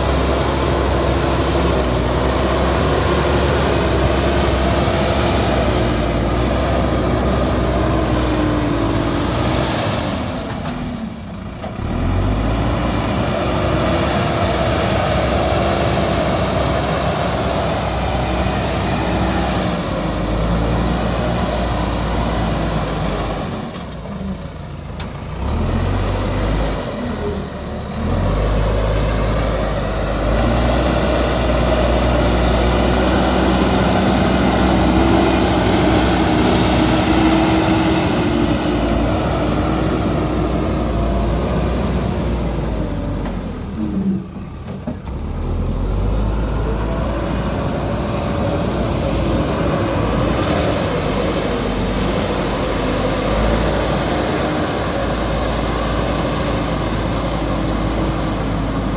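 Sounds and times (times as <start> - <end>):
diesel engine running hard: 0.0 - 58.9.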